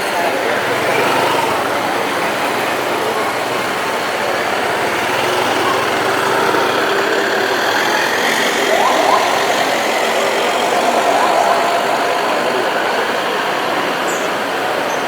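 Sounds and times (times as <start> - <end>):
busy street din: 0.0 - 15.0
engine rumble: 0.0 - 15.0
short rising tones: 7.9 - 13.7.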